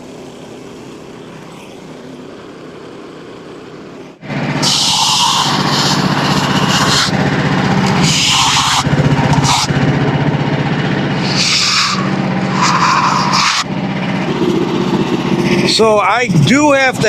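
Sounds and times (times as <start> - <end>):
gas engine running: 0.0 - 17.0
band blade cutting log: 4.6 - 9.8, 11.1 - 13.7.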